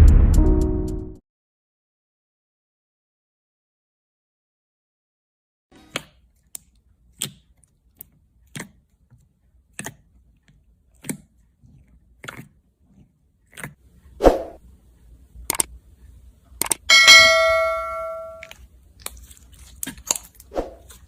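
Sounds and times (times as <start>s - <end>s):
slime crunch: 6.4s - 13.8s, 18.4s - 21.0s.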